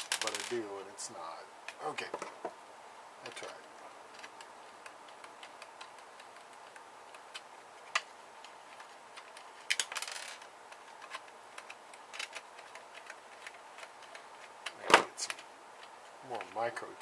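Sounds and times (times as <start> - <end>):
small tools and metal parts clicking: 11.0 - 15.4.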